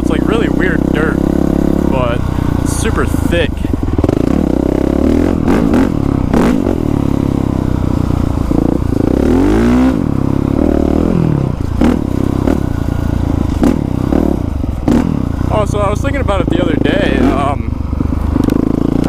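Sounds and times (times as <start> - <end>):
motorcycle engine revving: 0.0 - 19.0
sharp clatters from motorcycle: 18.0 - 19.0.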